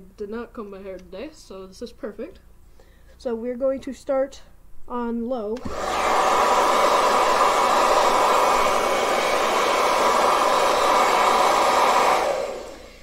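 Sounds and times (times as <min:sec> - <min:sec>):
hair dryer blowing air: 0:05.6 - 0:13.0.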